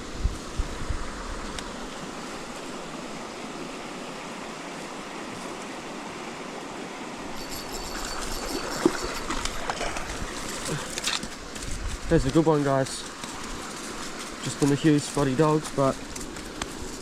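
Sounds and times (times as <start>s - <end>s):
river water rushing: 1.1s - 11.7s.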